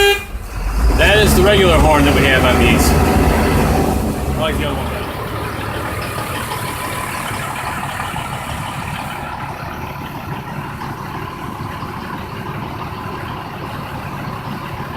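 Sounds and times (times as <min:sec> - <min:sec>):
truck engine running: 0:00.0 - 0:14.9.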